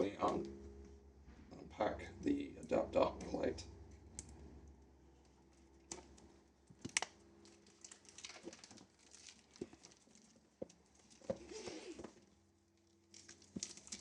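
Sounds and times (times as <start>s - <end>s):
packaging rustling and crinkling: 6.8s - 12.3s.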